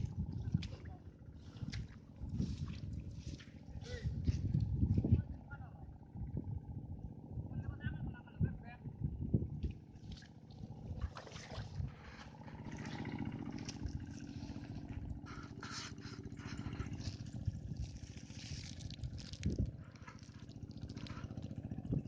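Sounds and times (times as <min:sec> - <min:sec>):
small engine running: 0:09.7 - 0:22.0.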